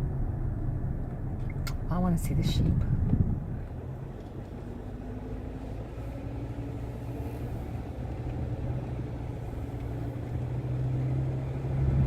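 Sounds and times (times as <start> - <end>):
vehicle engine and road drone: 0.0 - 12.0.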